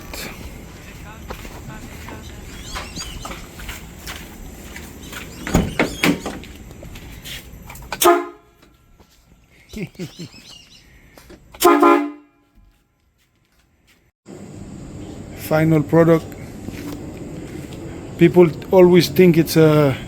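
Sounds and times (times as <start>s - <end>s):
train horn blasts: 7.9s - 8.7s, 11.6s - 12.6s.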